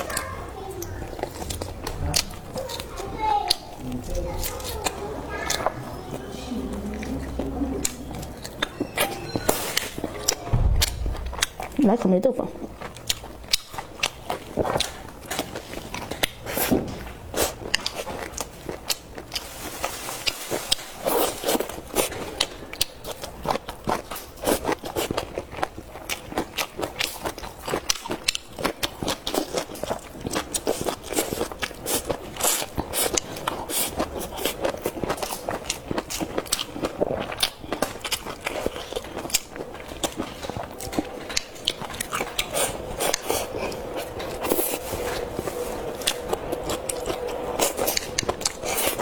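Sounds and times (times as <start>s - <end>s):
person chewing and crunching food: 0.0s - 49.0s.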